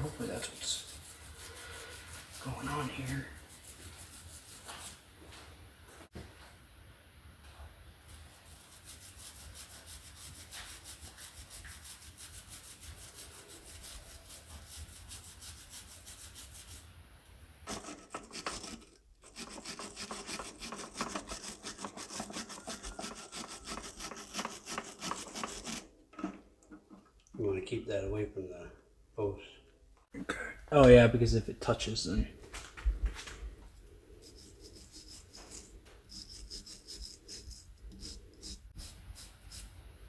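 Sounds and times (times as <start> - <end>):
brush scrubbing metal terminal: 0.0 - 5.0, 8.3 - 16.9, 17.7 - 27.1, 34.1 - 39.9.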